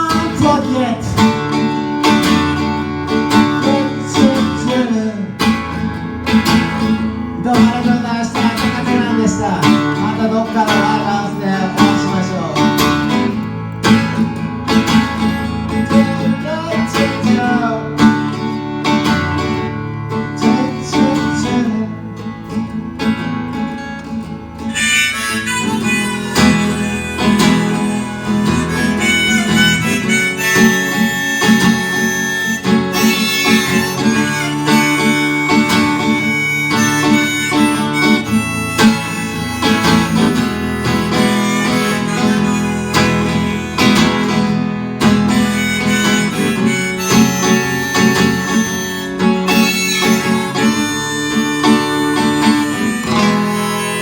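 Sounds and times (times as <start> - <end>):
acoustic guitar strumming: 0.0 - 54.0
wavering lead melody: 24.3 - 54.0.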